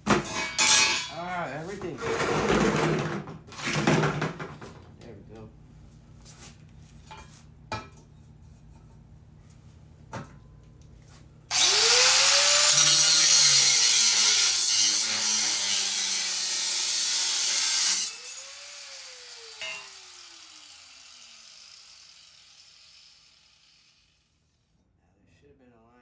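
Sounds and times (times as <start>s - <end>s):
angle grinder cutting metal: 11.5s - 24.2s.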